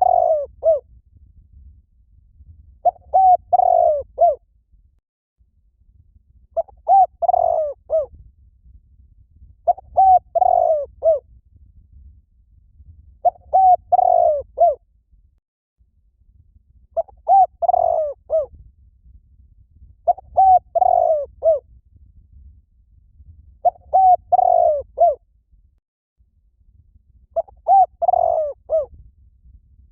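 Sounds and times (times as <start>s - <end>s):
dove cooing: 0.0s - 0.8s, 2.8s - 4.4s, 6.6s - 8.1s, 9.7s - 11.2s, 13.2s - 14.8s, 17.0s - 18.5s, 20.1s - 21.6s, 23.6s - 25.2s, 27.4s - 28.9s.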